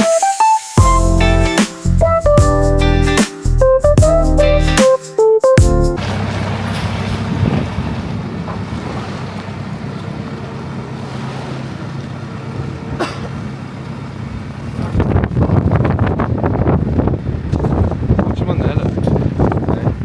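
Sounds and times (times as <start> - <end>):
engine running: 6.0 - 18.2
wind on microphone: 6.8 - 9.7, 14.3 - 20.0.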